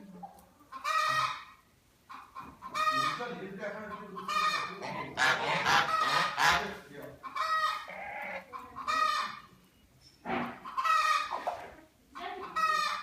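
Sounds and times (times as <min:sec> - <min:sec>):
chickens clucking: 0:00.0 - 0:13.0
chickens squawking: 0:00.2 - 0:09.7, 0:10.4 - 0:13.0.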